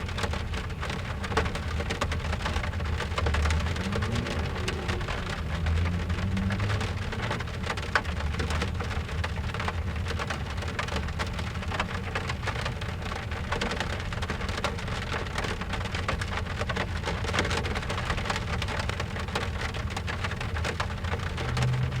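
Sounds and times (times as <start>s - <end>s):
rain pattering on car roof: 0.0s - 22.0s
low rumble: 2.8s - 9.9s.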